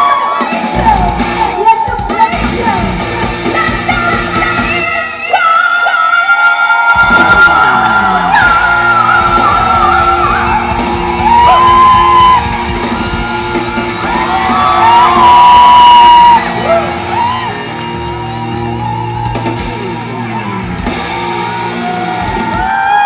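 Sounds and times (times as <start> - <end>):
live pop-rock band music: 0.0 - 5.4, 7.0 - 23.0.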